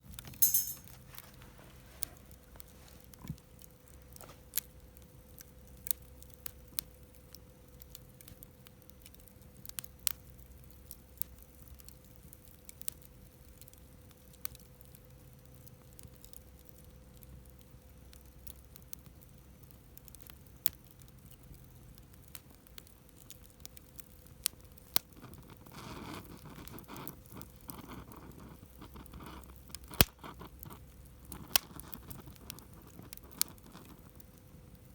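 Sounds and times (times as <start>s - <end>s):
campfire crackling and popping: 1.0s - 34.9s.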